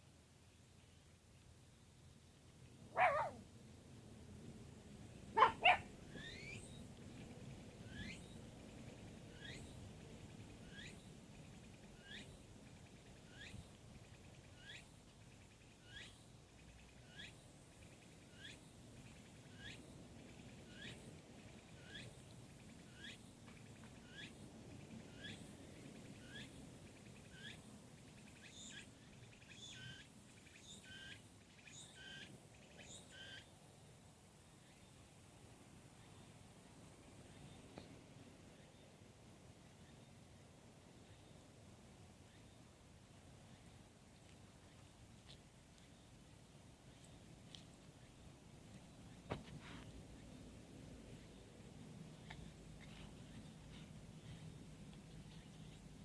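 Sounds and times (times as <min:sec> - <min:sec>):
bird chirping: 0:03.0 - 0:03.4, 0:05.4 - 0:06.8.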